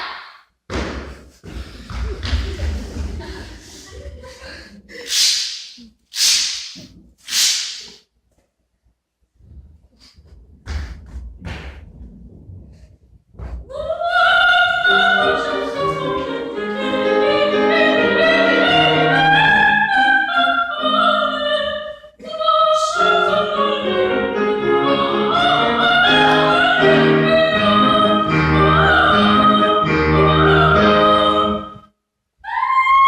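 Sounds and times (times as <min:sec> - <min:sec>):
soprano singing operatically: 0:13.7 - 0:31.8, 0:32.4 - 0:33.0.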